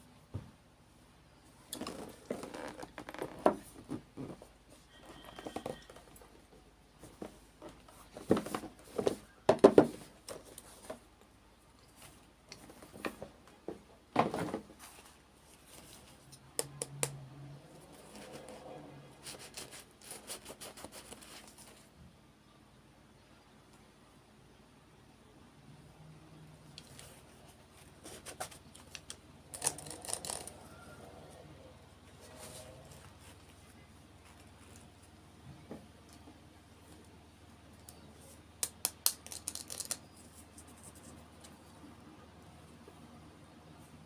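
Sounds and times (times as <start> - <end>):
wrapping crinkling: 28.0 - 30.8
plastic pieces clicking: 38.6 - 40.0.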